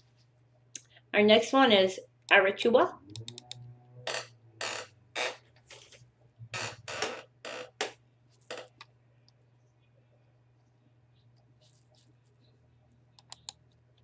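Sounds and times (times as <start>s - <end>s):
low steady hum: 0.0s - 14.0s
keyboard typing: 13.2s - 13.8s.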